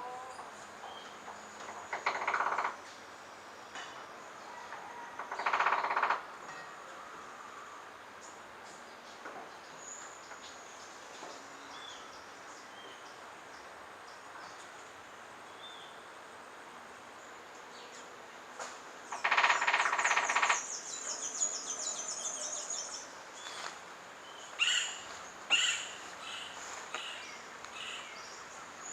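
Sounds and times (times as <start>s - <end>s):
faint background bird calls: 0.0s - 16.3s, 17.0s - 28.9s
woodpecker drumming: 1.7s - 2.8s, 5.2s - 6.2s, 19.1s - 20.7s.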